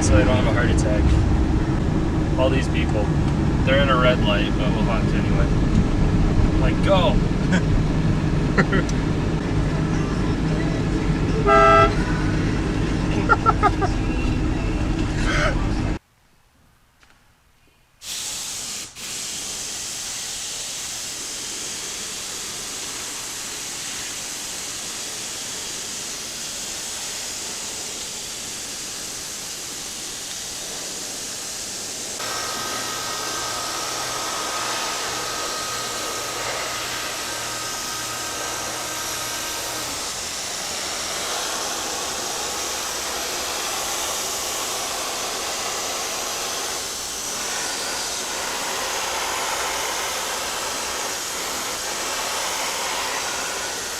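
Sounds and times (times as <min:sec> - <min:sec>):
low hum with whistling tones: 0:08.6 - 0:16.0
steady airy hiss: 0:18.0 - 0:53.9.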